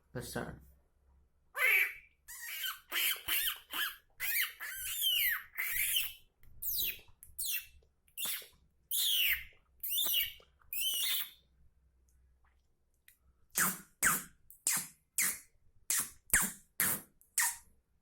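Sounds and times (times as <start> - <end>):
person imitating bird calls: 1.6 - 11.3, 13.6 - 17.6.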